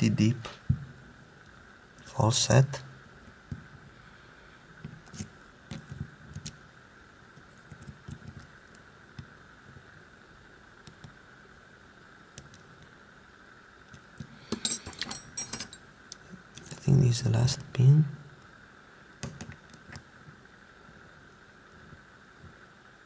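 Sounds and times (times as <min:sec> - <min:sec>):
metallic clicks and clinks: 0:14.5 - 0:15.8.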